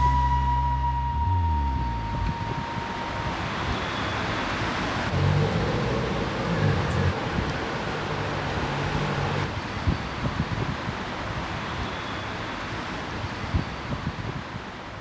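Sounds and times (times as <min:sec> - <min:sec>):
low engine-like hum: 0:00.0 - 0:09.5
road traffic: 0:00.0 - 0:15.0.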